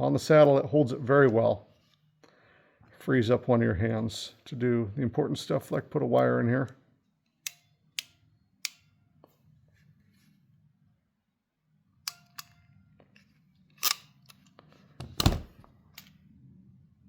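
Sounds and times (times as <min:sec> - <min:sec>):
ratcheting crimping tool clicks: 0:12.1 - 0:12.6, 0:13.8 - 0:14.4.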